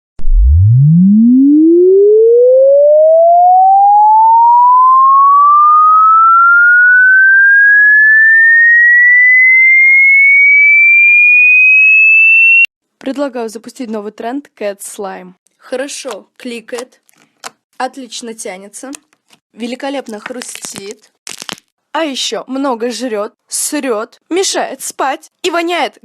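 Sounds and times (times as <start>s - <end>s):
electronic tone sweeping upward: 0.2s - 12.7s.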